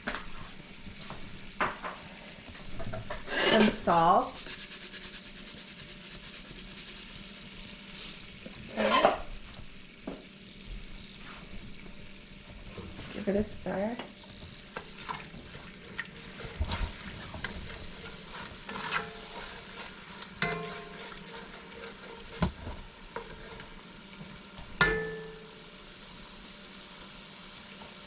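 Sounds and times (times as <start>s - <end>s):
food sizzling in a pan: 0.0s - 28.0s
spoon knocking against pan: 20.4s - 21.0s, 24.8s - 25.6s.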